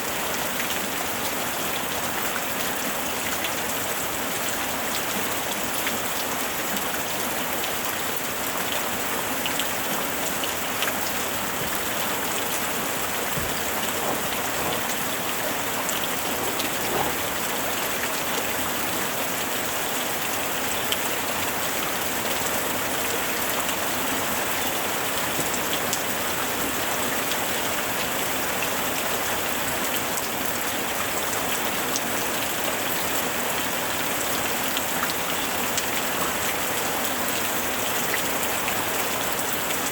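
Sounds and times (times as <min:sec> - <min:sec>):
steady rain hiss: 0:00.0 - 0:39.9
raindrops ticking: 0:10.3 - 0:18.1.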